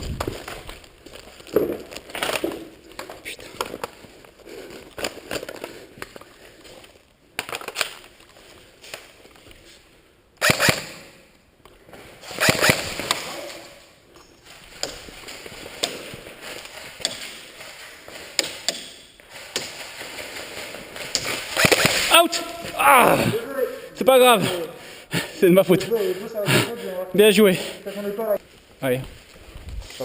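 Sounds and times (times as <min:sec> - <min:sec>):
airsoft gun shots: 0:10.4 - 0:11.1, 0:12.4 - 0:13.3, 0:21.5 - 0:22.1
airsoft gun bursts: 0:10.4 - 0:11.2, 0:12.3 - 0:13.3, 0:21.4 - 0:22.2.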